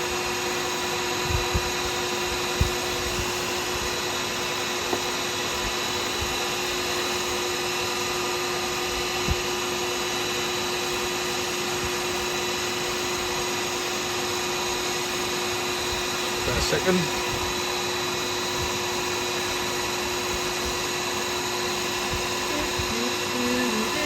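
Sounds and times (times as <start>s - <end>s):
wood lathe motor whine: 0.0s - 24.0s.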